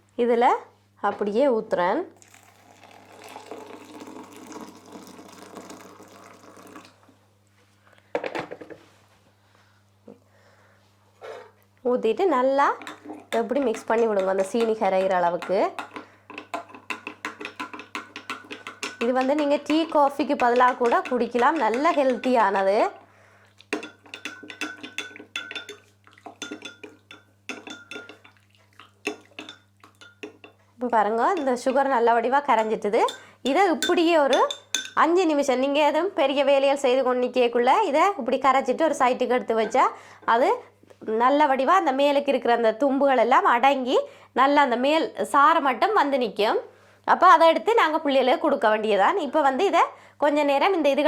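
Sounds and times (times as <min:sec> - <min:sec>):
water pouring into a cup: 0:02.2 - 0:07.0
spoon clinking in a cup: 0:12.8 - 0:22.7, 0:23.7 - 0:30.6, 0:31.4 - 0:31.8, 0:32.6 - 0:35.1.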